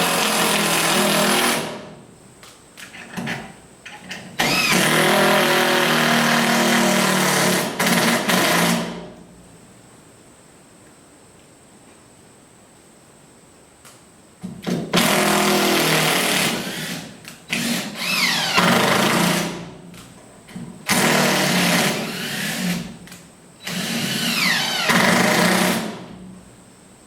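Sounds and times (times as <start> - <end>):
cordless drill driving screws: 4.0 - 9.0, 14.9 - 19.7, 20.9 - 22.9, 23.6 - 26.0.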